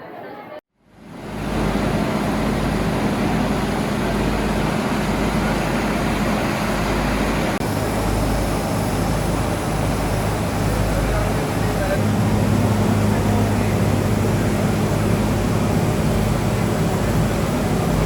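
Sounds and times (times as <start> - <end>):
steam locomotive rushing noise: 1.1 - 18.0
low hum: 11.8 - 18.0.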